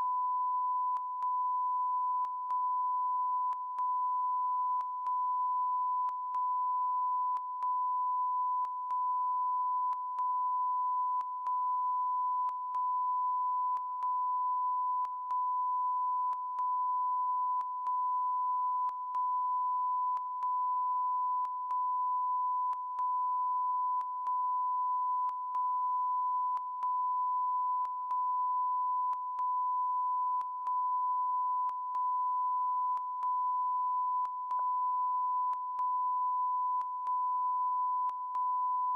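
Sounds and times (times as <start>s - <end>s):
steady high-pitched beep: 0.0s - 38.9s.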